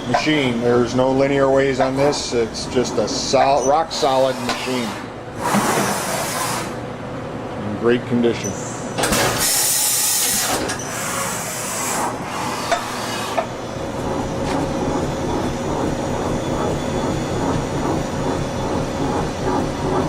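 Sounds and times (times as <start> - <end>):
machine drives rumbling and whining: 0.0 - 5.9, 6.8 - 20.0
air hissing: 4.2 - 6.8, 8.6 - 13.5.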